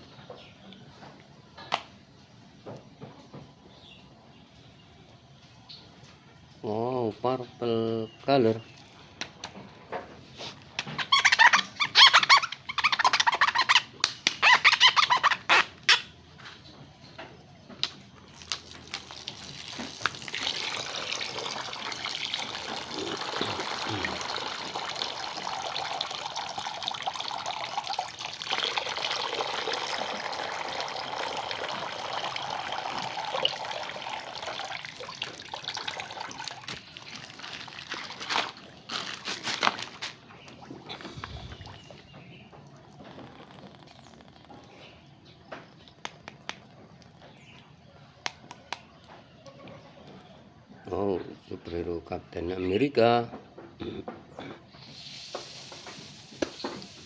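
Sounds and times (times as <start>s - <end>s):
running water rushing: 18.8s - 38.6s.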